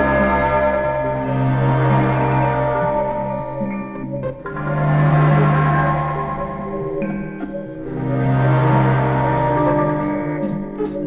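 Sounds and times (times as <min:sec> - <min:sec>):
ambient electronic music: 0:00.0 - 0:11.0.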